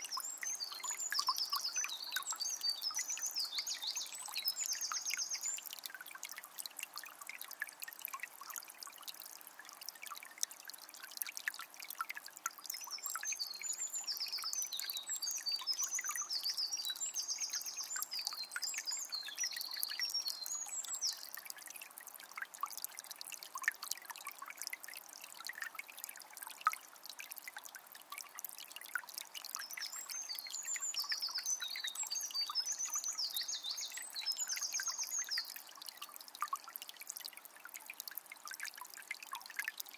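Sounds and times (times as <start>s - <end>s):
small bird singing: 0.0s - 5.6s, 12.8s - 21.4s, 29.6s - 35.7s.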